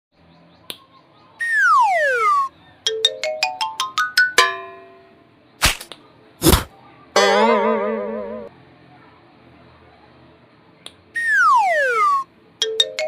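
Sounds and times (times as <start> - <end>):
falling slide whistle: 1.4 - 2.5, 11.2 - 12.3.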